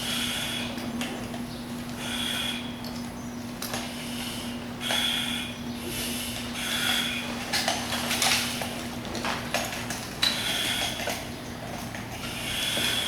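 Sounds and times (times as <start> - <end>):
hissing breath through regulator: 3.9 - 7.2, 12.3 - 13.0.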